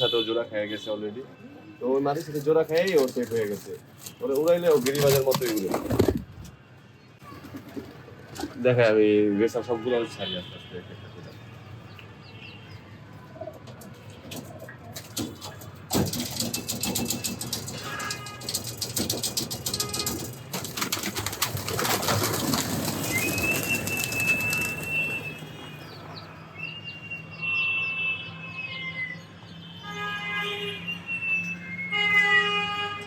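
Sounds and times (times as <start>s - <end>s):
pigeon wings flapping: 15.0s - 25.4s.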